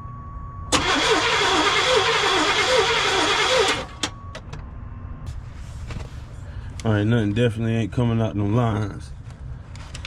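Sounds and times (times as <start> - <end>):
engine cranking on starter: 0.7 - 4.1.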